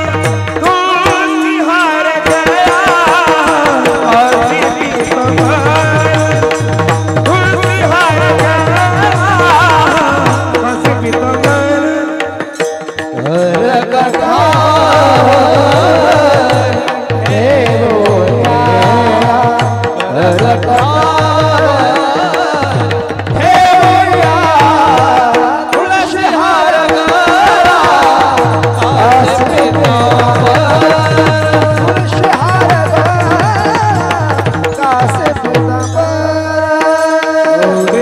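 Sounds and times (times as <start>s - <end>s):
devotional singing: 0.0s - 38.0s
percussion: 0.0s - 38.0s.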